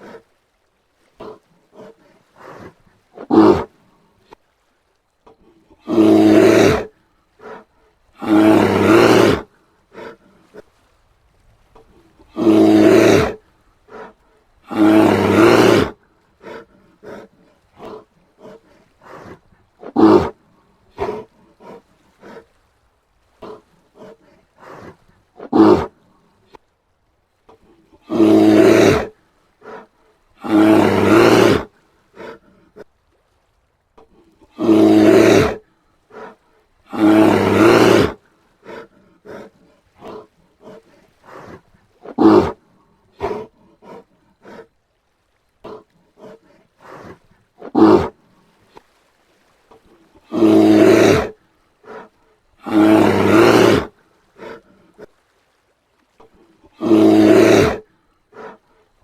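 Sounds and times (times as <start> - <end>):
bear barks and grunts: 1.1 - 3.8, 5.3 - 10.7, 11.8 - 22.5, 23.4 - 26.6, 27.6 - 32.9, 34.0 - 44.7, 45.6 - 48.2, 50.0 - 55.1, 56.2 - 58.6
bear roaring: 1.2 - 3.7, 5.8 - 10.6, 12.2 - 22.4, 23.4 - 25.9, 27.7 - 32.8, 34.4 - 44.7, 45.6 - 48.2, 50.2 - 55.1, 56.7 - 58.6.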